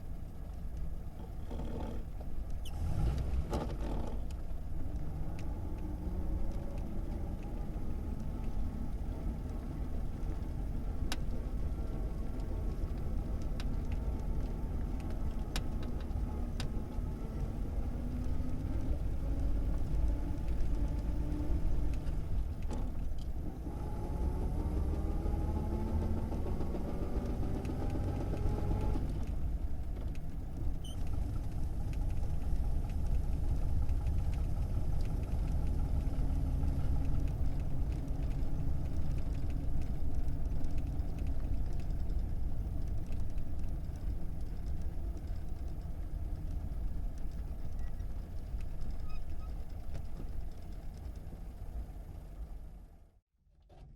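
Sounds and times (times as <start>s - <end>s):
car engine accelerating through gears: 2.6s - 30.2s, 31.0s - 43.2s.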